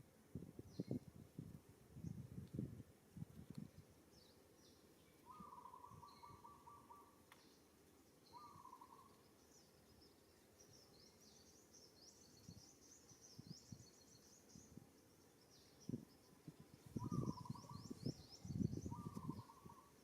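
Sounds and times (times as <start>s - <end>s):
birds chirping: 4.1s - 20.0s
bird trilling call: 5.2s - 7.2s, 8.3s - 9.1s, 17.0s - 19.9s.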